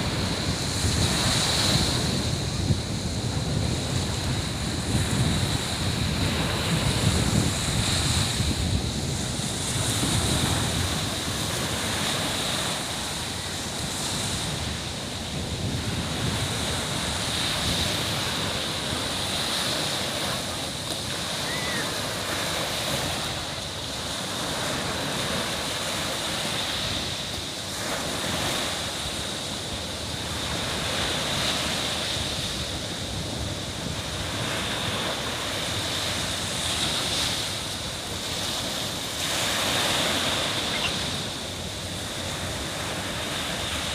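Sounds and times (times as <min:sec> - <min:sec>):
waves washing onto beach: 0:00.0 - 0:43.9
wind buffeting microphone: 0:00.0 - 0:43.9
steady high-pitched tone: 0:40.6 - 0:41.1.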